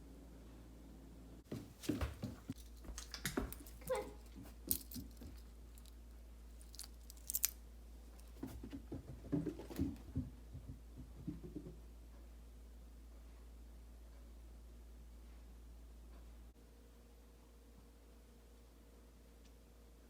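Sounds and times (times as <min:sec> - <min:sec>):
objects being handled: 0:01.5 - 0:07.6.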